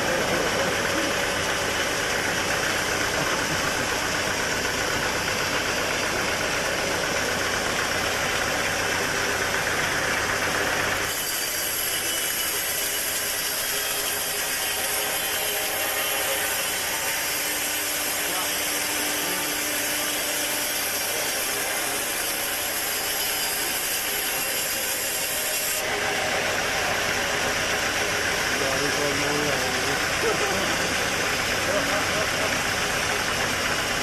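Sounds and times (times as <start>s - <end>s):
sawmill machinery drone: 0.0s - 34.0s
saw hissing through wood: 10.0s - 33.9s.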